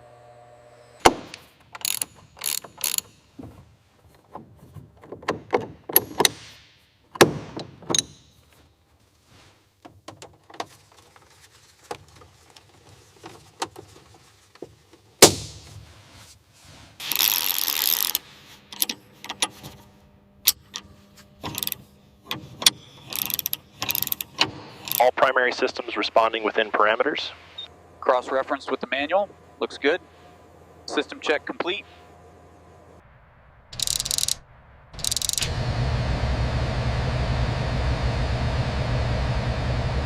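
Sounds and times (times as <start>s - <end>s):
metallic tool clicks and clanks: 1.8s - 3.2s, 21.4s - 21.8s, 22.6s - 25.1s, 33.8s - 34.4s, 35.0s - 35.5s
ratchet ticks: 1.8s - 3.2s, 21.5s - 21.8s, 23.1s - 24.3s, 33.8s - 34.4s, 35.0s - 35.5s.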